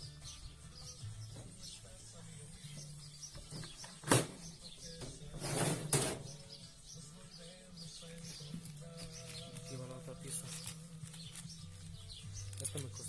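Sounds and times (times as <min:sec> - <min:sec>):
birds chirping faintly: 0:00.0 - 0:13.0
scraping rustle: 0:05.1 - 0:06.4, 0:08.1 - 0:12.8.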